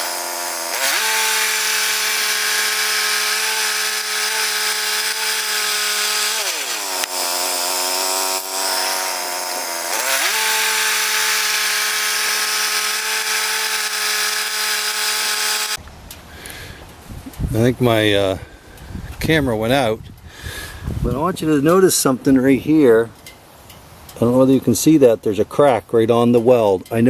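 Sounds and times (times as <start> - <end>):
bandsaw sawmill engine running: 0.0 - 15.8.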